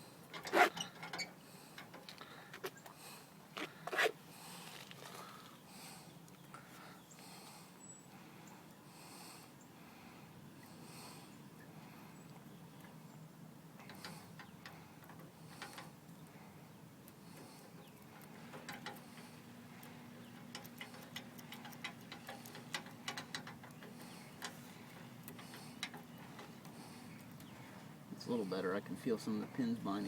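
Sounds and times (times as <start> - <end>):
lock picks clicking and scraping: 17.1 - 27.5.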